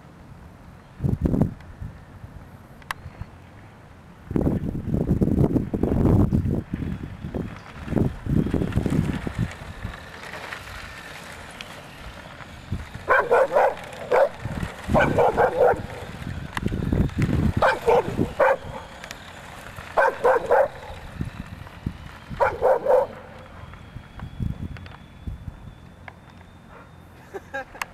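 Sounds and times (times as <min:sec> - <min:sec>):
dog barking: 0:13.1 - 0:14.4, 0:15.0 - 0:15.8, 0:17.6 - 0:18.8, 0:20.0 - 0:20.8, 0:22.4 - 0:23.2.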